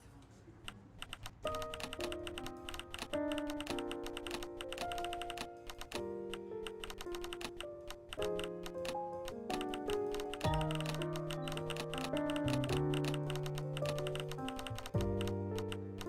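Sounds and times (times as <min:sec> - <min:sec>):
rapid irregular clicks: 0:00.7 - 0:16.0
background music with held chords: 0:05.9 - 0:16.0.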